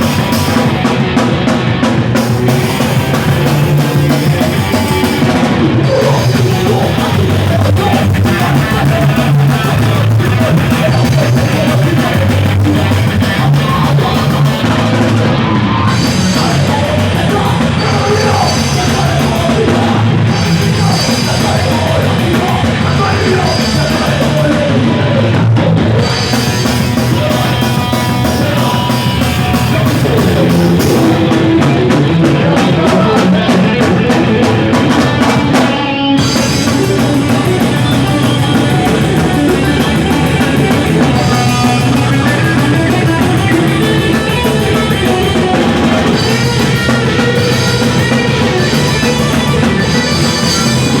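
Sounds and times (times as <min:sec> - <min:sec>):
bass guitar: 0:00.0 - 0:51.0
distorted electric guitars: 0:00.0 - 0:51.0
driving drum kit: 0:00.0 - 0:51.0
shouted vocals: 0:02.6 - 0:34.8.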